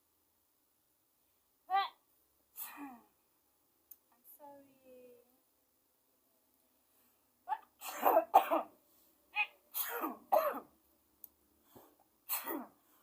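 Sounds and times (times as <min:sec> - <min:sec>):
person sneezing loudly: 0:02.6 - 0:03.0, 0:09.4 - 0:10.6, 0:12.3 - 0:12.8.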